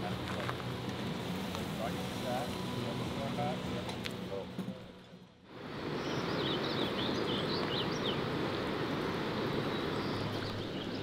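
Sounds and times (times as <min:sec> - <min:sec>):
falling water rushing: 0:05.6 - 0:11.0
small birds chirping: 0:05.8 - 0:11.0.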